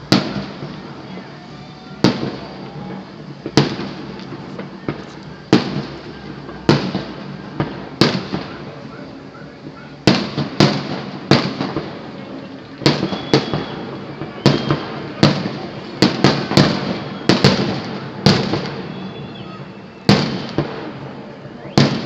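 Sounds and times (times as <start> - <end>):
fireworks bursting: 0.0 - 22.0.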